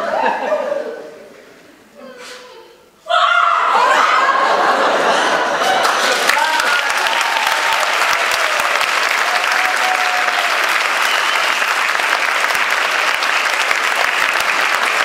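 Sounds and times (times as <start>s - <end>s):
audience clapping: 5.5s - 15.0s.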